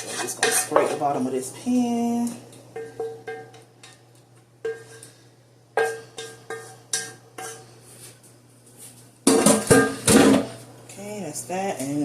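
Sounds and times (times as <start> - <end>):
utensil scraping a pan: 0.0 - 1.2, 5.8 - 8.2.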